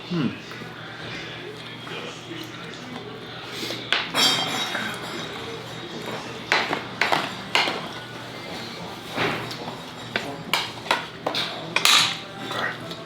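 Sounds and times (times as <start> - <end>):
utensils clicking on dishes: 4.0 - 13.0.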